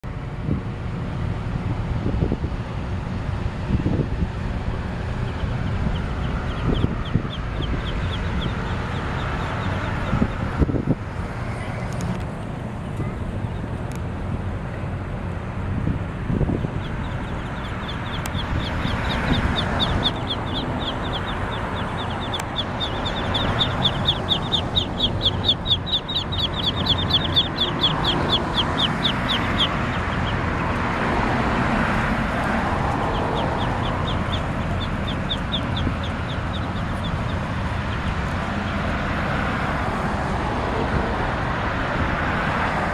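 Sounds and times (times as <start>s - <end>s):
ducklings peeping: 4.6s - 10.9s, 12.8s - 13.9s, 16.3s - 39.8s.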